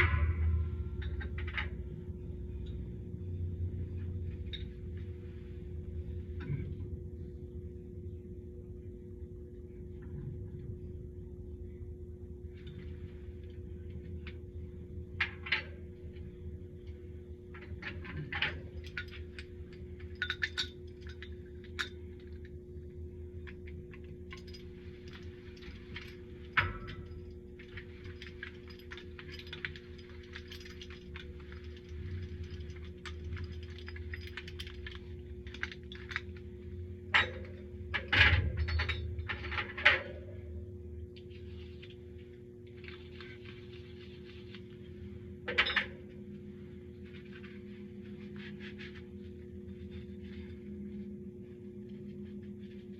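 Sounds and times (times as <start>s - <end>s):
steady low hum: 0.0s - 52.9s
metal pipe fittings clinking: 17.8s - 22.6s, 24.2s - 36.4s, 45.5s - 46.0s.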